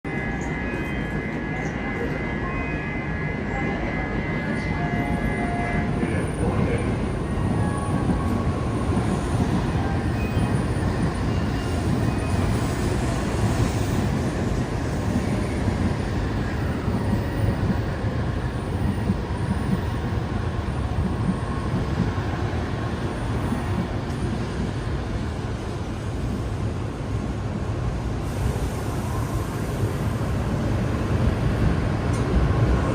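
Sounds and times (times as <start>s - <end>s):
train rumbling: 0.1s - 32.9s.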